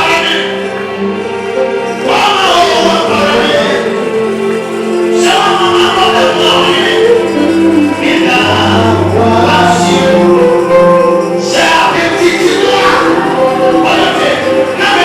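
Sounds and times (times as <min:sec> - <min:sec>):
gospel choir singing: 0:00.0 - 0:15.0.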